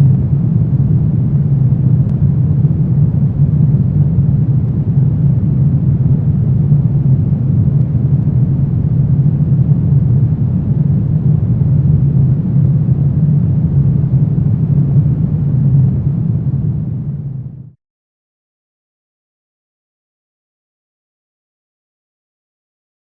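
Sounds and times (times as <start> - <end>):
wind rumbling: 0.0 - 17.5.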